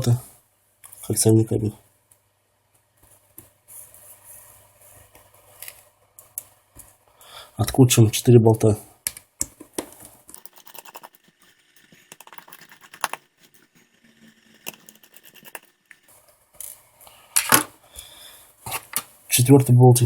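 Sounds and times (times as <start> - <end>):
screwdriver turning tiny screws: 10.3 - 13.7, 14.4 - 16.1.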